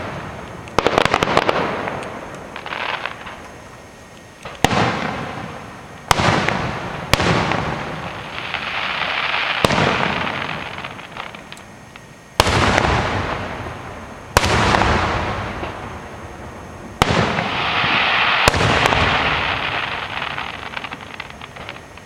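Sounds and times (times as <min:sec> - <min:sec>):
fireworks bangs: 0:00.0 - 0:22.0
fireworks crackling: 0:00.0 - 0:22.0
fireworks rushing sound: 0:00.0 - 0:22.0.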